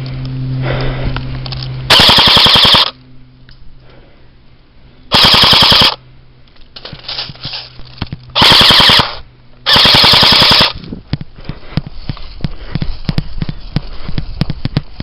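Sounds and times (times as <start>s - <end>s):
airsoft rifle full-auto bursts: 1.9s - 3.0s, 5.1s - 6.0s, 8.4s - 10.8s.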